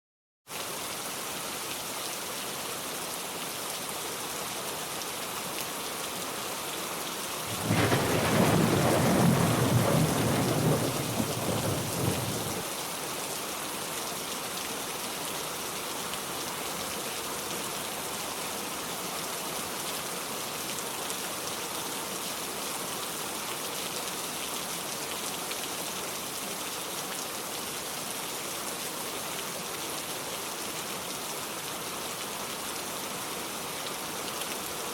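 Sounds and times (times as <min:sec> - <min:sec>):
thunder rumbling: 0:07.4 - 0:12.6
heavy rain falling: 0:07.4 - 0:12.7.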